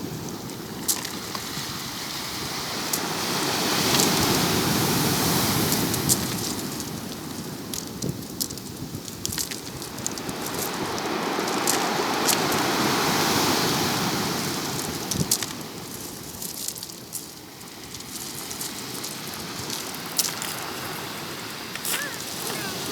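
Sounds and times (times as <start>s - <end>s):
sharp crackles in surf: 0.2s - 22.9s
ocean waves washing in: 17.5s - 22.9s.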